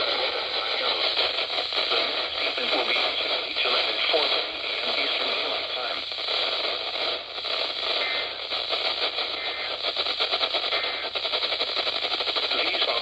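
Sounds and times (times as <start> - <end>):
radio static hiss: 0.0 - 13.0
rhythmic pulsing interference: 0.0 - 13.0.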